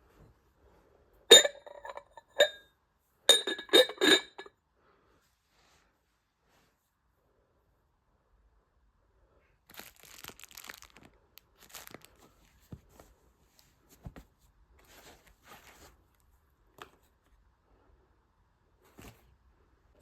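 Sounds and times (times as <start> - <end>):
packaging crinkling and tearing: 9.7 - 12.3.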